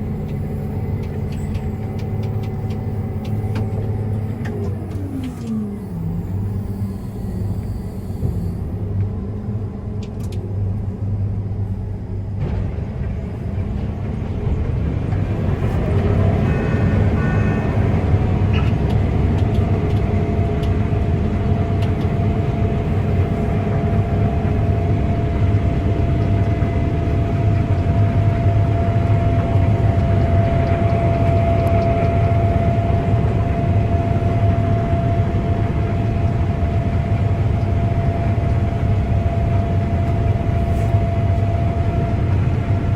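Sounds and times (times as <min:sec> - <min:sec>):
harvester engine rumble: 0:00.0 - 0:42.9
steady machine whine: 0:00.0 - 0:42.9.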